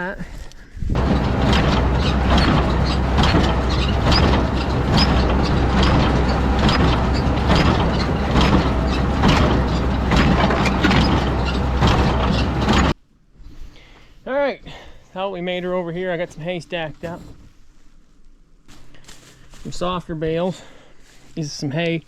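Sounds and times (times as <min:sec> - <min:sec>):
baler mechanical knocks: 0:01.0 - 0:13.0
tractor engine drone: 0:01.0 - 0:13.0.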